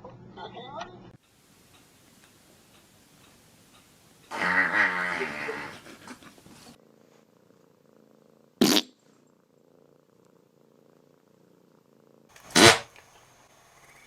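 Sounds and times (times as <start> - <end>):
cat purring: 1.6 - 12.7
short loud burst: 12.5 - 12.9.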